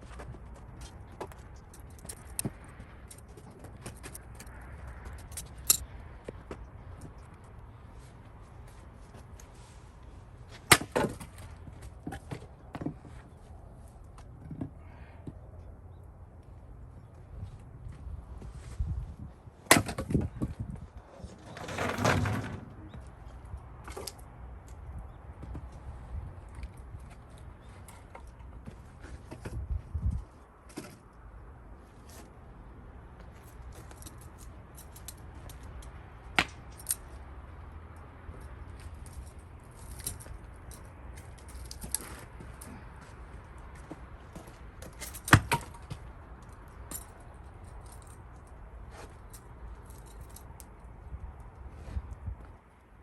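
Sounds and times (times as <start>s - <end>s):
axe striking wood: 10.7s - 11.2s
rough scraping noise: 21.0s - 22.9s
firewood clicks and knocks: 43.7s - 47.1s.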